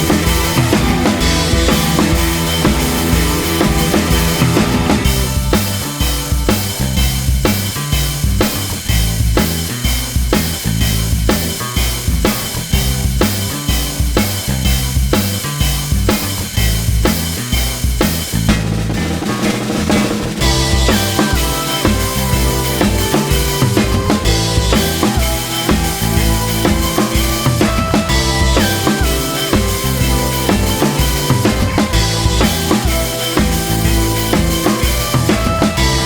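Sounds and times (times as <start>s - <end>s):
bass line: 0.0s - 36.0s
drum-kit beat: 0.0s - 36.0s.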